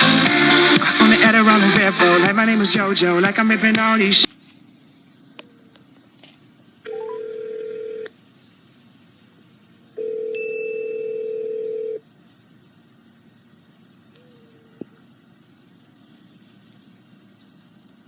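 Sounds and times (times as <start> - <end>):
telephone ringback tone: 6.9 - 8.1, 10.0 - 12.0.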